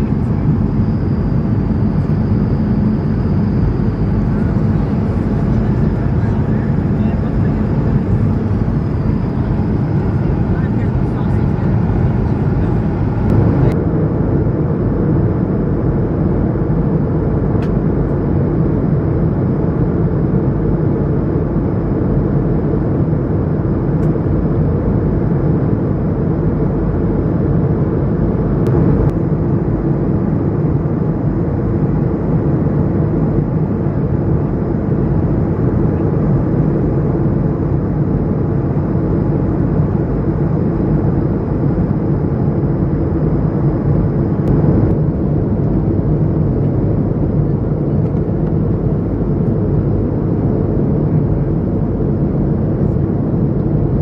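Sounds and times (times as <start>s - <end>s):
faint high whine: 0.0s - 13.8s
airliner engines roaring: 0.0s - 54.0s.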